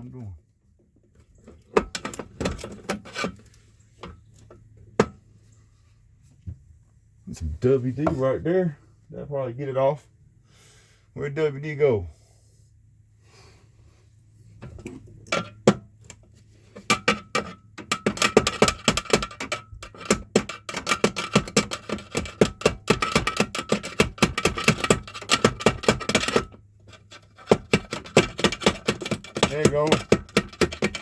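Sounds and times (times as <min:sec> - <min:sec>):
metal-on-metal tapping: 0:14.8 - 0:16.2, 0:16.8 - 0:31.0.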